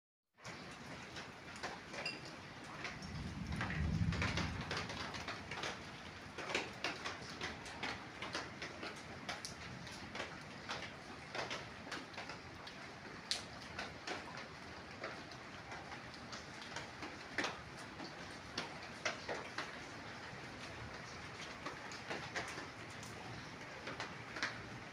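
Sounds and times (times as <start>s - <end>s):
rain falling: 0.4s - 24.9s
low rumble: 3.0s - 5.3s.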